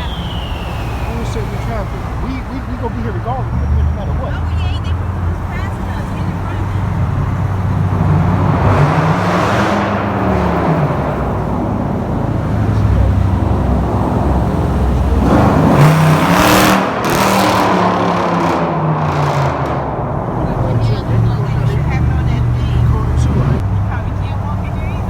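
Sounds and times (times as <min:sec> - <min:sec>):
rushing noise burst: 0:00.0 - 0:02.8
car exhausts revving in tunnel: 0:00.0 - 0:25.0.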